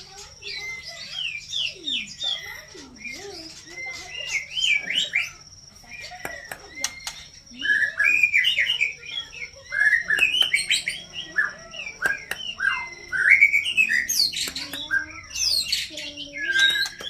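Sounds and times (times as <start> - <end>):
bird singing whistled phrases: 0.4 - 17.0.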